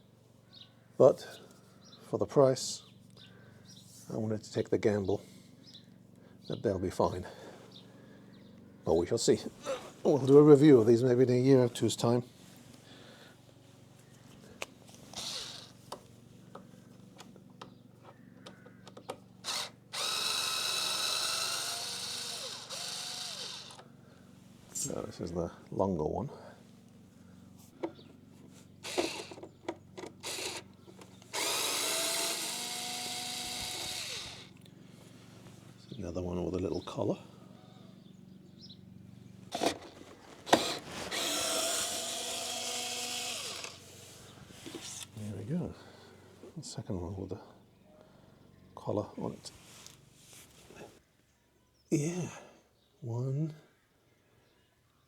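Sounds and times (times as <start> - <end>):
cordless drill whining: 15.1 - 15.8, 19.4 - 23.9, 28.8 - 34.7, 39.5 - 44.0.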